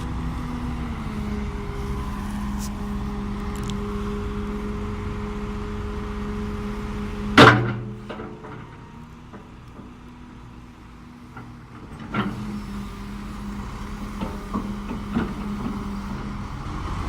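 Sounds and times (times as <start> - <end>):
excavator diesel engine idling: 0.0 - 17.0.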